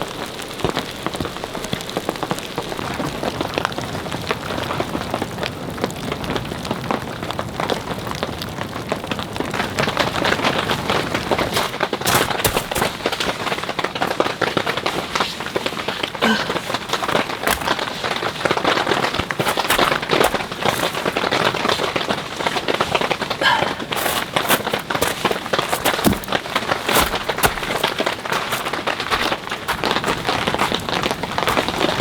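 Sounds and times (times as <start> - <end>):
steady rain falling: 0.0 - 12.2.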